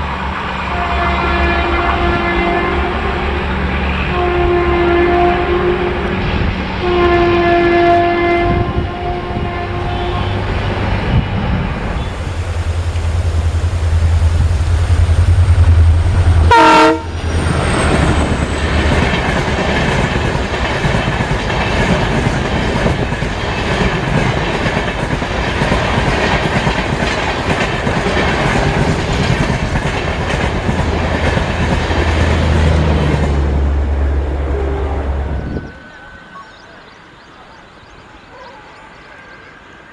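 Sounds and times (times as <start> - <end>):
train horn blast: 0.6 - 10.8, 15.6 - 18.2, 34.1 - 35.8
deep diesel engine drone: 12.0 - 19.3.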